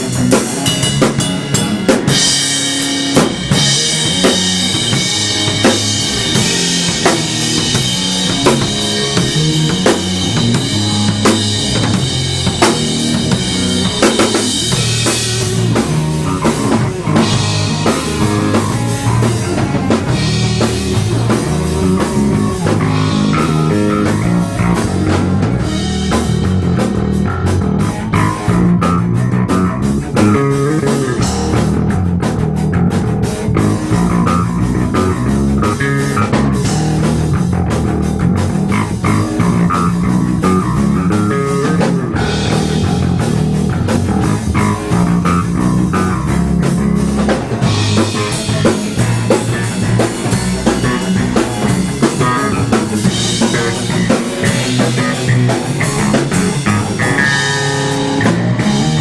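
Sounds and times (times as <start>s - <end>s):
rock music: 0.0s - 59.0s.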